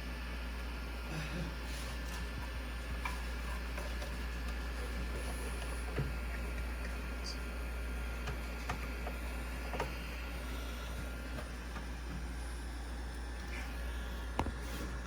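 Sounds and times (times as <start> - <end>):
steady low hum: 0.0 - 15.0
faint clicks and taps: 2.2 - 12.5.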